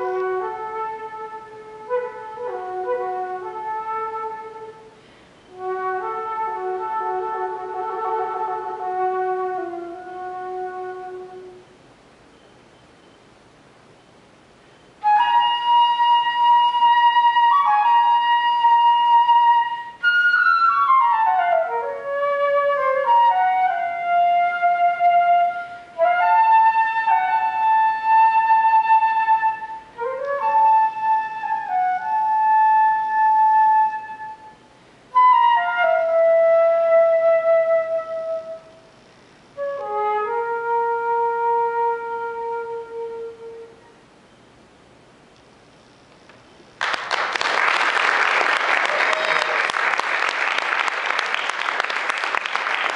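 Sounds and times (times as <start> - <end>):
solo flute playing: 0.0 - 11.6, 15.0 - 38.9, 39.6 - 44.0.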